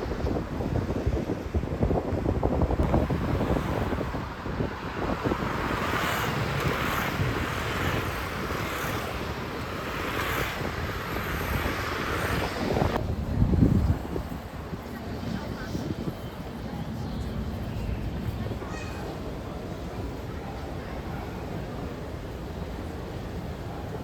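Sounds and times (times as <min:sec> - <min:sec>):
wind buffeting microphone: 0:00.0 - 0:18.8.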